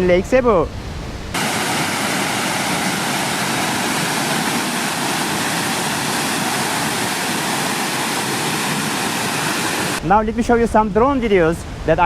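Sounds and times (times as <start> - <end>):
waterfall crashing: 1.4 - 10.0.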